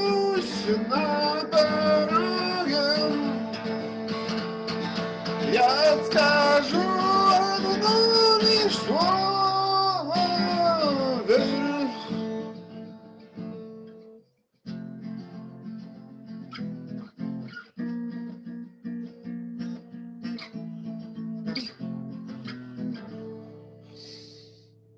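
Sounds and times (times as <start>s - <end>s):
person singing wordlessly: 0.0s - 3.9s, 5.3s - 12.8s
plucked acoustic guitar notes: 0.0s - 24.3s
acoustic guitar strumming: 0.0s - 24.9s.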